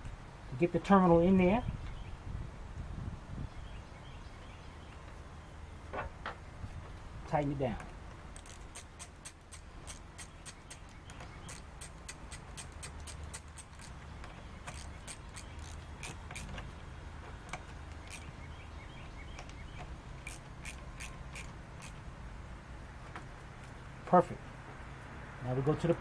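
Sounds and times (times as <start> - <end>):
ratchet wrench clicking: 8.4 - 10.9, 11.5 - 13.9, 14.7 - 16.6, 17.5 - 18.3, 20.2 - 22.0.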